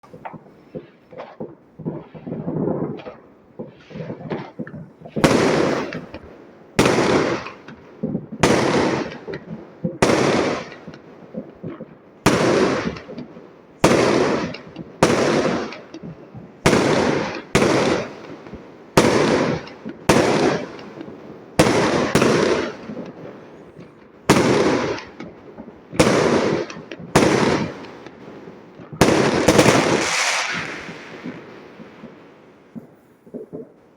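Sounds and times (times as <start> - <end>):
loud firework bangs with echo: 0.0 - 33.8
fireworks popping: 0.0 - 33.9.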